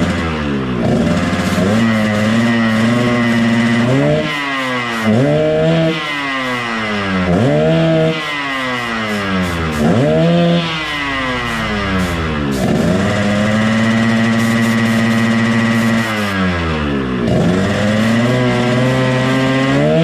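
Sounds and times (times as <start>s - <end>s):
motorcycle engine idling: 0.0s - 7.4s, 8.0s - 19.4s
motorcycle engine revving: 0.0s - 20.0s.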